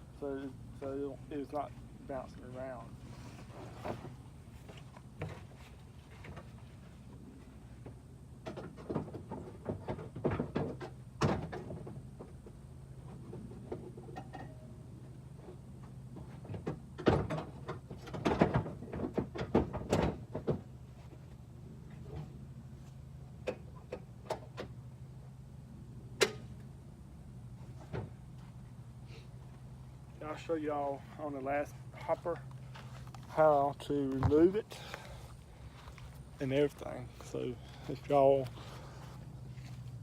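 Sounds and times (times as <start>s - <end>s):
steady low hum: 0.0s - 10.3s, 10.9s - 40.0s
plastic and metal clunks and rattles: 3.5s - 6.6s, 7.8s - 14.7s, 15.4s - 21.3s, 23.4s - 24.8s, 27.8s - 28.2s, 34.0s - 35.0s.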